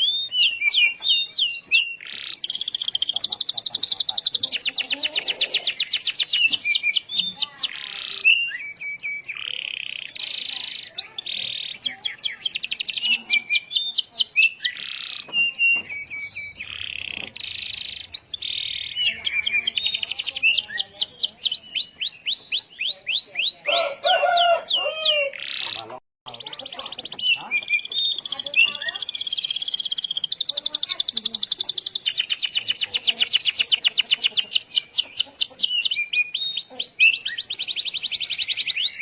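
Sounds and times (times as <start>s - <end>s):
canary singing: 0.0s - 39.0s.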